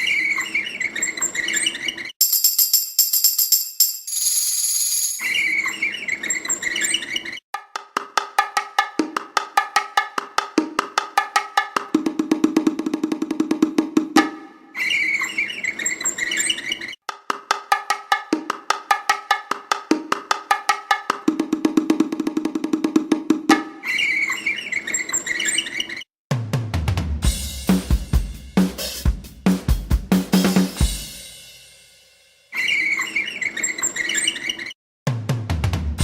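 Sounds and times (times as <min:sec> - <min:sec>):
percussion instrument fast strokes: 0:02.2 - 0:05.5.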